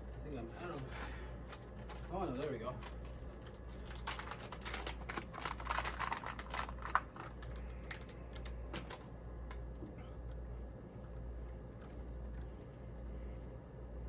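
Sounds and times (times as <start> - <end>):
small parts clicking and rattling: 3.8 - 9.0.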